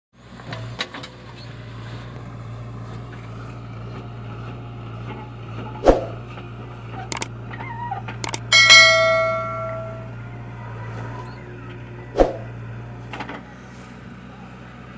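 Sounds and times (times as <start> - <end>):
diesel engine running: 0.2 - 14.9
small click: 8.2 - 8.5.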